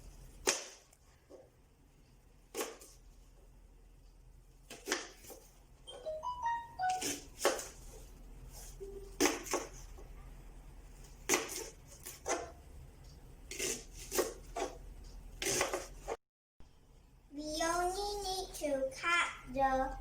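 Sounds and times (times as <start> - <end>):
knife slicing on cutting board: 6.9 - 10.0, 11.2 - 12.6, 13.5 - 14.8, 15.4 - 16.2.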